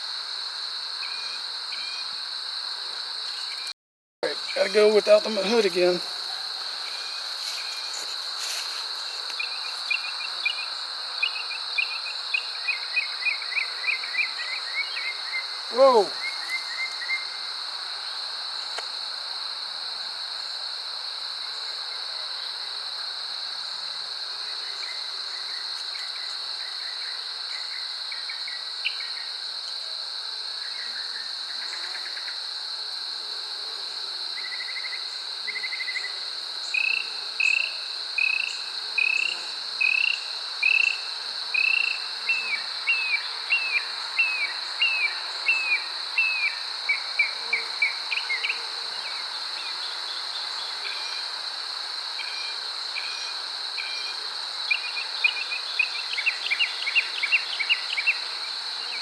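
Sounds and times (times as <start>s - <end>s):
insect trill: 0.0s - 59.0s
man exclaiming: 15.7s - 16.2s.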